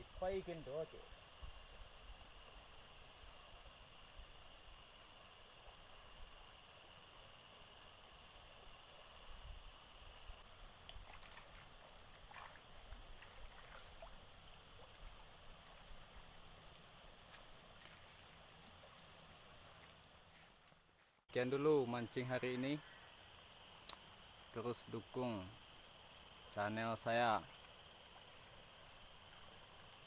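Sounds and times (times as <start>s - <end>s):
insects chirring: 0.0s - 30.0s
faint water sounds: 9.0s - 30.0s.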